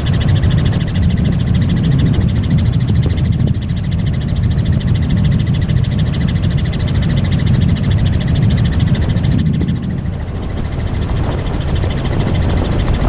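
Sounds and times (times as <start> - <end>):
helicopter rotor thrum: 0.0 - 13.0
turbine whine: 0.0 - 13.0.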